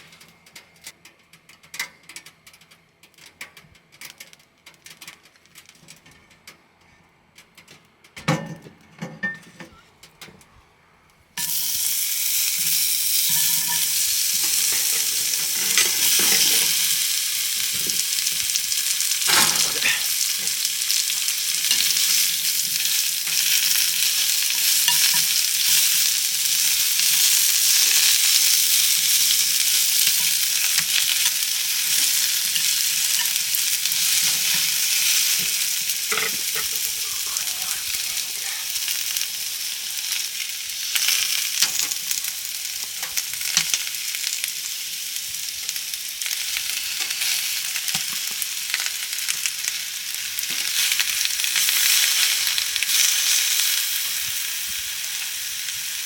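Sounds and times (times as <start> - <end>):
food sizzling in a pan: 11.4 - 56.0.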